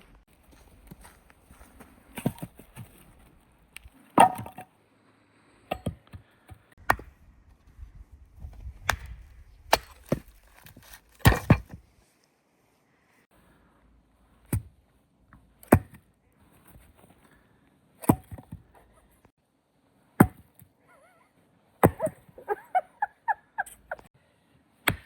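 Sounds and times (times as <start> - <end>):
dry wood cracking: 8.8 - 11.5.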